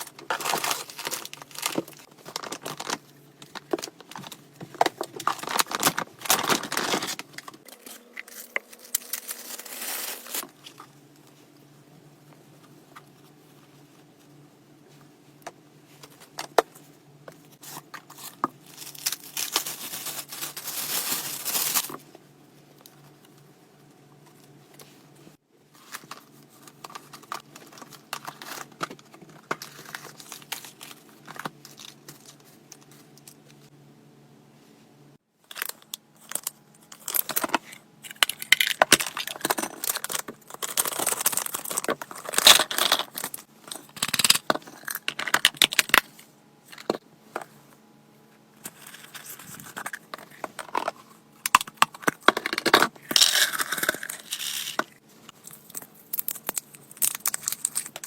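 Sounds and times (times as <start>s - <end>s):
gift packaging tearing and rustling: 0.0s - 10.5s, 17.6s - 22.0s, 38.2s - 46.0s.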